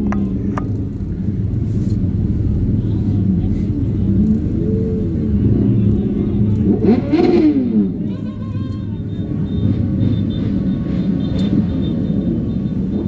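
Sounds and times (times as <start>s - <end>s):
voices: 0.0s - 12.8s
street traffic rumble: 0.0s - 13.0s
car horns: 5.4s - 13.0s.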